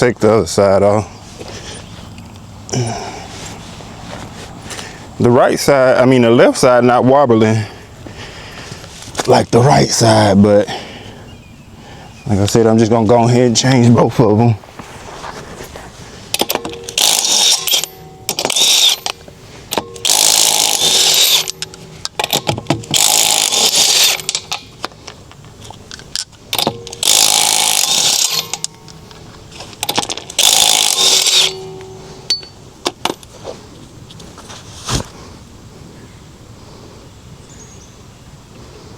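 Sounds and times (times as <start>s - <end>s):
metal clicks and clanks: 16.3s - 33.3s
impact wrench hammering: 16.4s - 24.6s, 26.6s - 28.8s, 29.8s - 33.2s.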